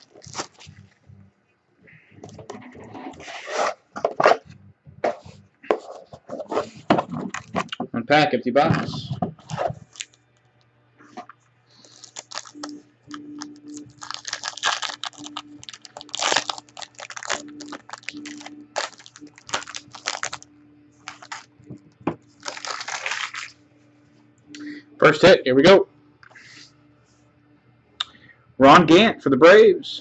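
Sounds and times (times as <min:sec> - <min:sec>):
card pack crinkling and rustling: 0:00.0 - 0:00.7, 0:09.4 - 0:10.2, 0:11.8 - 0:20.4, 0:21.0 - 0:21.5, 0:22.3 - 0:23.6
faint steady hum: 0:00.0 - 0:30.0.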